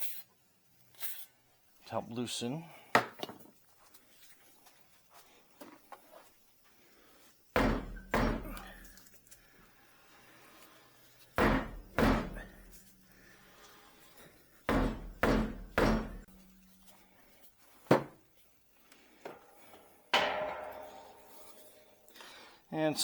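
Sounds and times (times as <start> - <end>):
sledgehammer striking car wheel: 7.6 - 8.8, 11.4 - 12.7, 14.7 - 16.4, 20.2 - 21.5.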